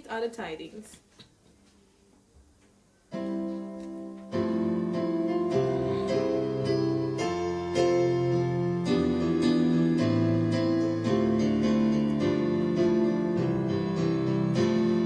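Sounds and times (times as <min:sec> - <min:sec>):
piano playing hymn chords: 0:03.1 - 0:15.0.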